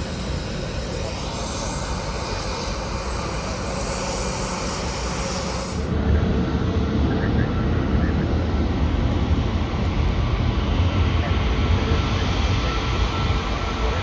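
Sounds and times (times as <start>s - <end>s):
jet engine high whine: 0.0s - 14.0s
jet engine roar: 0.0s - 14.0s.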